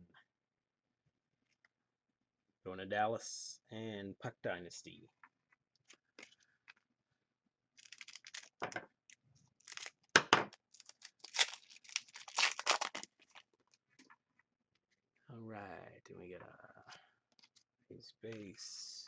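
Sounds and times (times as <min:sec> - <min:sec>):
wrapper tearing and crinkling: 0:07.8 - 0:08.6, 0:09.6 - 0:13.8.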